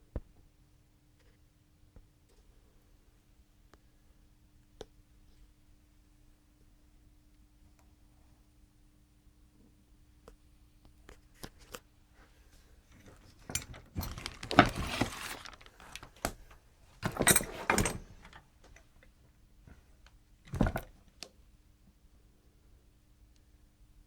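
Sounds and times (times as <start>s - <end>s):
small parts clattering and rattling: 13.0s - 18.8s.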